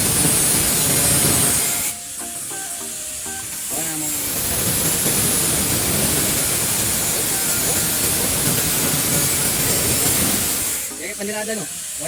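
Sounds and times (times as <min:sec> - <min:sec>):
arc welding crackling sizzle: 0:00.0 - 0:12.0.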